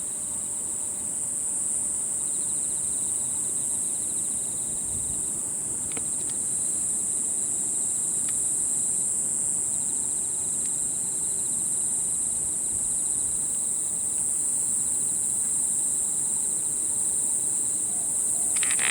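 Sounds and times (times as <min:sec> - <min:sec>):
high-pitched insect trill: 0:09.7 - 0:18.9
pulsing insect call: 0:16.6 - 0:18.9.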